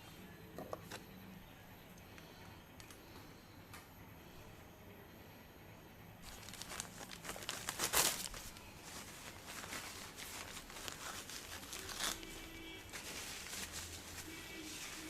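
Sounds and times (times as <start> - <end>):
hands rubbing through hair: 8.2 - 15.0.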